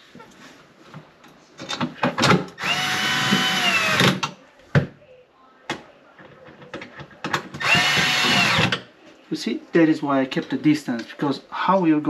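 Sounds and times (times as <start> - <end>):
power drill driving a screw: 2.6 - 4.2, 7.6 - 8.8.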